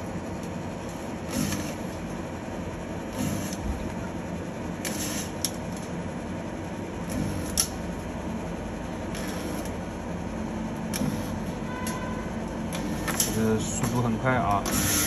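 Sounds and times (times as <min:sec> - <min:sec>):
steady background hum: 0:00.0 - 0:15.0
spot welder hissing bursts: 0:01.2 - 0:02.0, 0:03.1 - 0:03.8, 0:04.8 - 0:05.5, 0:07.0 - 0:07.9, 0:09.0 - 0:09.8, 0:10.9 - 0:11.5, 0:12.7 - 0:15.0
sharp welding snap: 0:01.3 - 0:01.8, 0:04.8 - 0:05.6, 0:09.1 - 0:09.8, 0:10.9 - 0:12.0.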